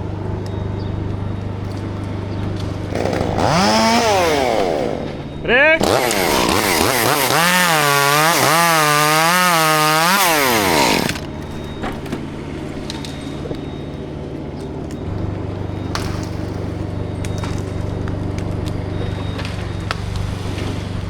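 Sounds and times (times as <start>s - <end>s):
low steady engine hum: 0.0s - 5.7s, 10.3s - 21.0s
chainsaw cutting at full throttle: 2.8s - 11.3s.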